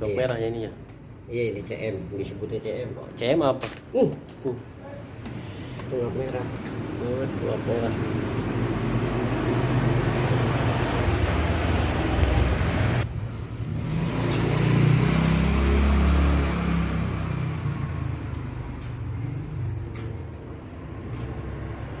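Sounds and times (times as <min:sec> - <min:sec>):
traffic hum: 0:00.0 - 0:22.0
vehicle engine rumble passing: 0:06.0 - 0:22.0.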